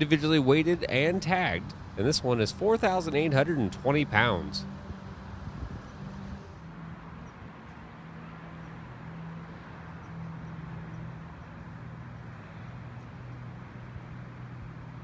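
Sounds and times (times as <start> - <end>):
low engine-like drone: 0.0 - 15.0.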